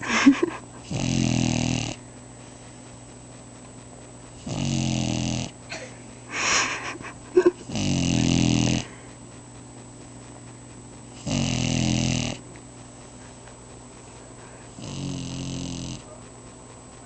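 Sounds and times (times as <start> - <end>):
dog snoring: 0.0 - 2.1, 4.3 - 6.5, 7.4 - 9.3, 10.4 - 12.6, 14.4 - 16.3
dog snorting: 0.0 - 17.0.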